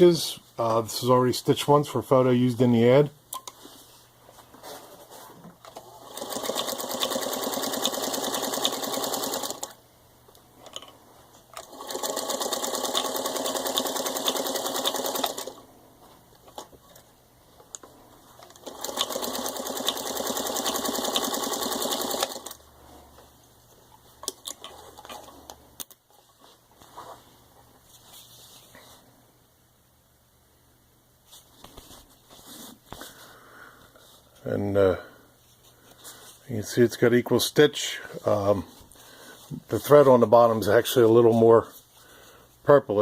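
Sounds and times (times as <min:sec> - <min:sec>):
sewing machine stitching: 0:05.6 - 0:09.8, 0:11.6 - 0:15.6, 0:18.4 - 0:22.6.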